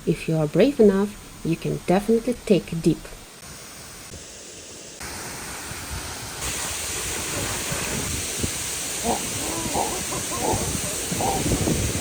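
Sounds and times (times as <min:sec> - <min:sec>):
waterfall rushing: 0:05.0 - 0:12.0.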